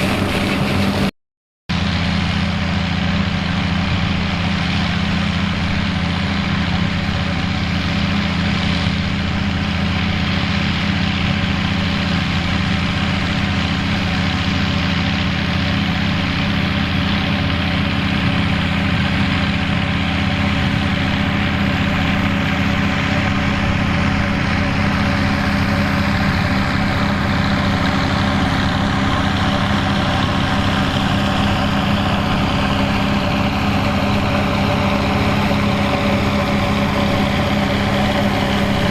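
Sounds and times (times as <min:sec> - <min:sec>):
tractor diesel engine running: 0:00.0 - 0:01.1, 0:01.7 - 0:38.9.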